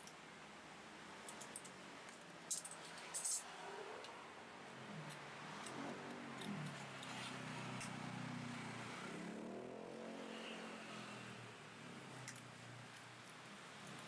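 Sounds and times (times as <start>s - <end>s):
vehicle engine revving: 4.8s - 12.3s.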